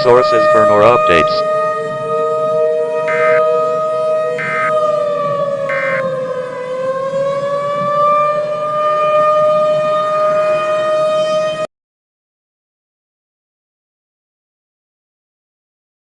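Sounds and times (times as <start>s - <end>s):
warning siren wailing: 0.0s - 11.7s.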